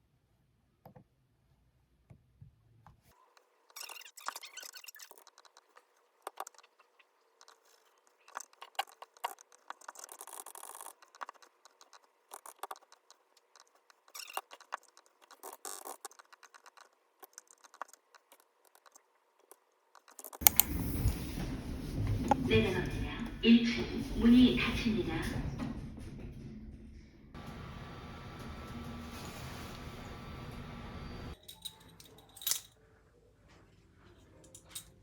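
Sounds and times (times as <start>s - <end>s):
small objects clicking and tapping: 3.7s - 20.6s.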